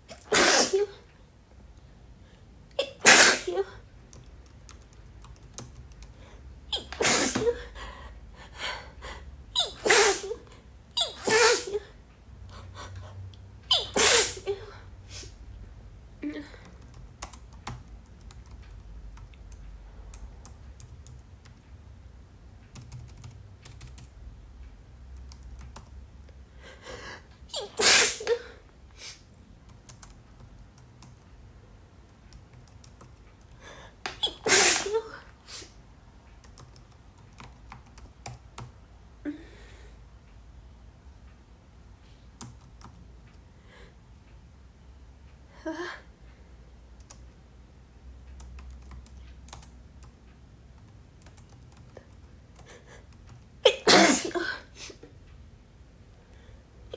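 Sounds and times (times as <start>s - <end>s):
woman sneezing: 0.1s - 1.1s, 2.8s - 3.8s, 6.7s - 7.6s, 9.6s - 11.9s, 13.7s - 15.3s, 27.5s - 29.2s, 34.1s - 35.8s, 53.7s - 55.0s
keyboard typing: 4.0s - 6.2s, 16.6s - 21.6s, 22.7s - 24.2s, 25.1s - 26.0s, 29.6s - 31.3s, 32.1s - 33.6s, 36.4s - 38.8s, 42.4s - 43.4s, 47.0s - 47.3s, 48.3s - 53.6s.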